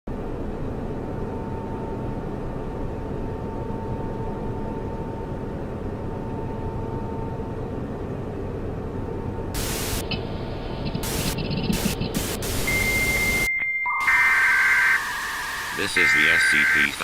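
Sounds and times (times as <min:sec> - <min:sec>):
low rumbling noise: 0:00.1 - 0:13.5
loud static hiss: 0:09.5 - 0:17.0.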